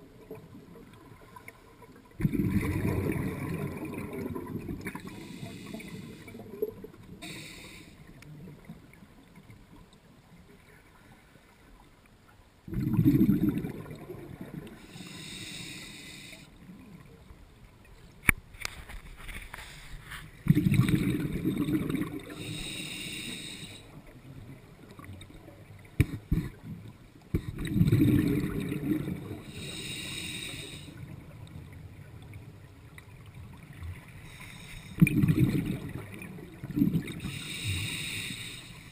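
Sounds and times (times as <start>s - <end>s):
exhaled bubbles rumbling: 0.0s - 7.2s, 12.6s - 14.8s, 20.4s - 22.5s, 24.0s - 29.6s, 35.0s - 37.6s
regulator inhalation hiss: 5.0s - 6.4s, 7.2s - 8.1s, 14.8s - 16.5s, 22.3s - 24.0s, 29.5s - 31.0s, 34.3s - 35.0s, 37.2s - 38.9s.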